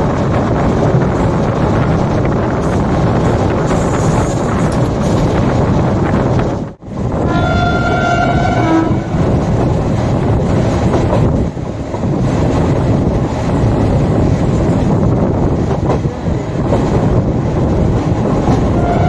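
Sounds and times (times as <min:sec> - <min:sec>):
train coaches running on track: 0:00.0 - 0:19.0
train horn: 0:07.2 - 0:09.4, 0:18.7 - 0:19.0.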